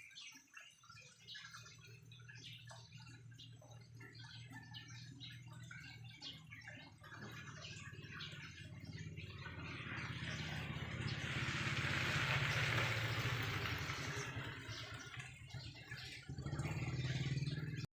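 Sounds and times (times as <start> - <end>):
motor engine humming: 7.2 - 17.9.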